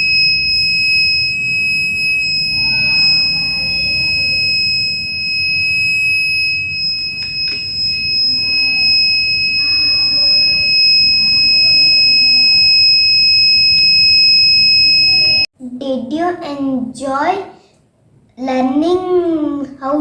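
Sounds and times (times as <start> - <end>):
high-pitched alarm buzzer: 0.0 - 15.5.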